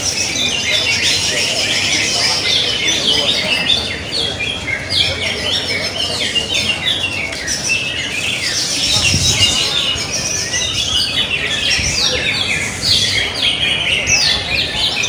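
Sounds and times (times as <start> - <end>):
songbirds chirping and whistling: 0.0 - 15.0.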